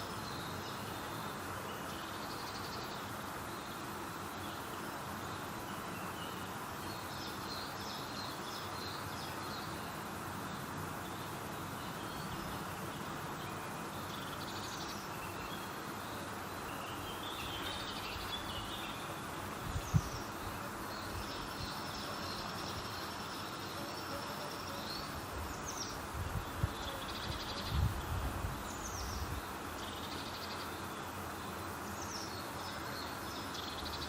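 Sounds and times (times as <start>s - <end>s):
background hiss: 0.0s - 34.0s
small birds chirping: 0.0s - 34.0s.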